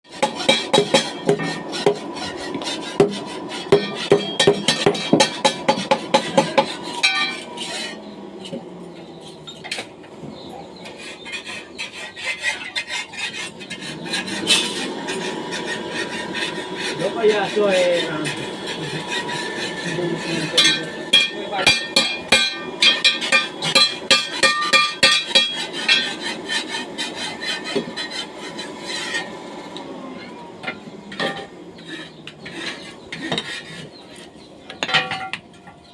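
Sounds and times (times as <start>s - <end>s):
hand tool striking metal: 0.1s - 2.0s, 2.6s - 8.0s, 20.4s - 28.3s
metallic clinks and scraping: 3.7s - 8.6s
faint steady ringing: 7.0s - 7.9s, 18.7s - 26.2s.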